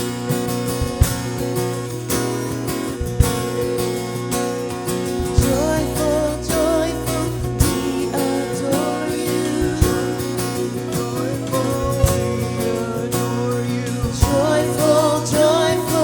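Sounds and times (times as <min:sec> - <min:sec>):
strummed acoustic guitar: 0:00.0 - 0:16.0
struck beat: 0:03.0 - 0:04.0, 0:05.1 - 0:16.0.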